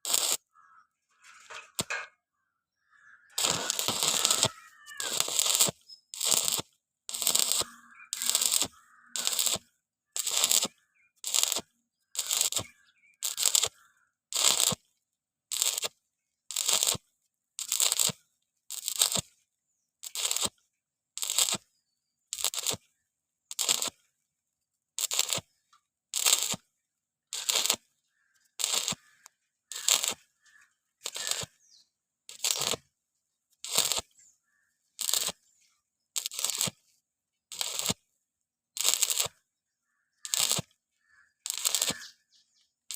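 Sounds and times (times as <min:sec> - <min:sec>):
arc welding crackle: 0:00.0 - 0:02.1, 0:03.2 - 0:14.8, 0:15.5 - 0:15.9, 0:16.5 - 0:17.0, 0:17.6 - 0:19.3, 0:20.0 - 0:20.6, 0:21.2 - 0:21.7, 0:22.3 - 0:22.9, 0:23.5 - 0:24.0, 0:25.0 - 0:25.5, 0:26.1 - 0:26.6, 0:27.3 - 0:27.9, 0:28.5 - 0:31.7, 0:32.3 - 0:32.8, 0:33.6 - 0:34.1, 0:34.9 - 0:35.4, 0:36.2 - 0:36.9, 0:37.5 - 0:38.0, 0:38.7 - 0:39.4, 0:40.1 - 0:42.3.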